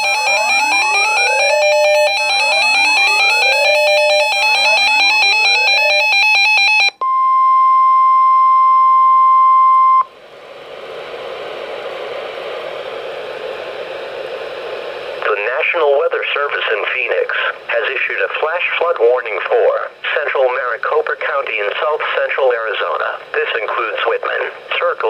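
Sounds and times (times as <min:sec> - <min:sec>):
steady alarm tone: 0:00.0 - 0:07.0
electronic alert rising sweeps: 0:00.1 - 0:06.2
radio static hiss: 0:10.3 - 0:25.0.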